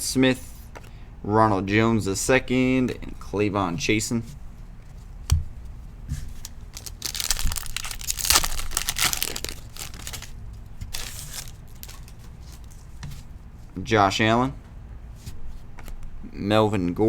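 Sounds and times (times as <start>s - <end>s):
foil wrapper tearing and crinkling: 6.4s - 12.8s.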